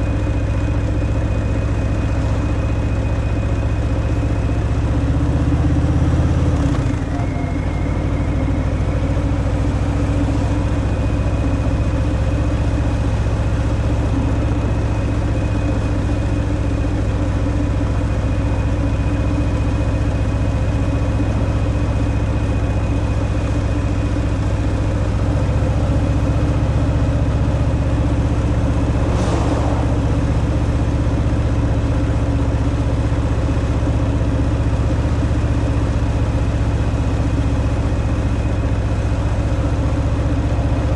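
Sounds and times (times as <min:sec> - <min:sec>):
short rushing sound: 0:28.6 - 0:32.0.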